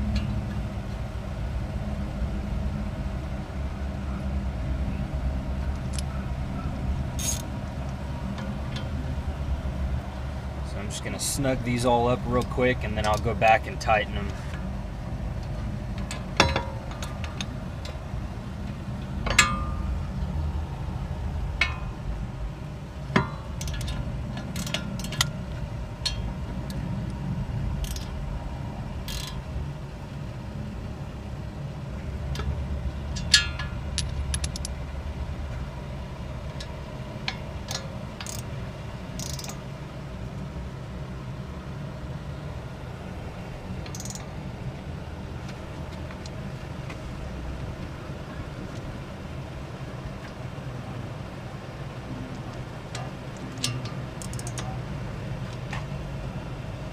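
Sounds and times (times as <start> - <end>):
steady low rumble: 0.0 - 56.9
hand tools clinking on bolts: 7.2 - 7.5, 33.2 - 34.7, 53.0 - 54.8.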